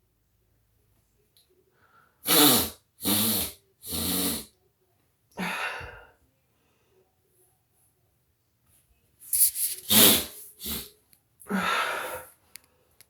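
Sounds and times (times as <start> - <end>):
person sneezing: 2.3 - 4.4, 9.8 - 10.9.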